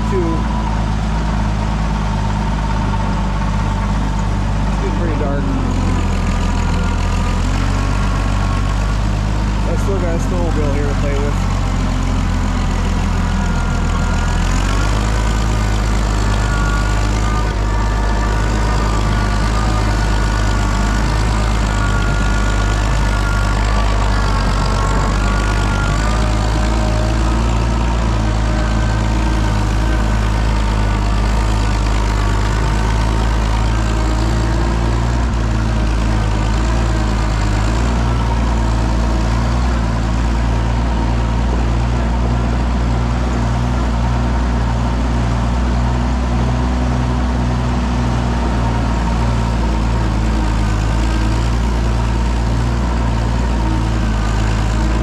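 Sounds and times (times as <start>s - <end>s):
tractor engine running: 0.0s - 55.0s.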